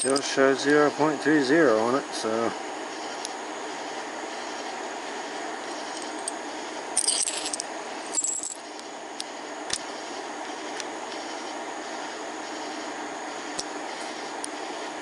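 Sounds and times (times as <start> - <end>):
small metal tools clinking: 0.0 - 0.4, 7.0 - 8.6
steady fan-like hum: 0.0 - 15.0.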